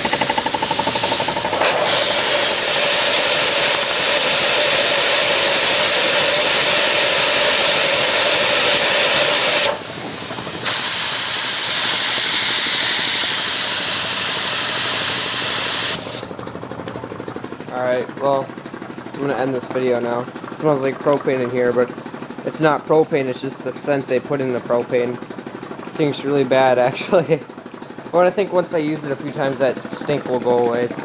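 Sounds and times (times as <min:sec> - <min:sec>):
compressed air hissing: 0:00.0 - 0:16.3.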